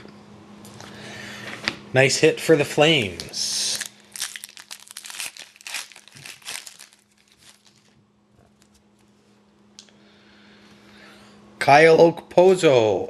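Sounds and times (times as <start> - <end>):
faint steady hum: 0.0 - 13.0
plastic wrapper crinkling: 3.1 - 8.8.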